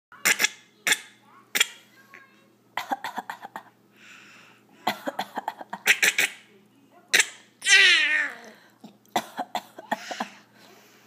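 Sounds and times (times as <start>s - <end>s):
breathy exhale: 3.9s - 4.7s
person coughing: 4.9s - 6.3s, 9.2s - 10.4s.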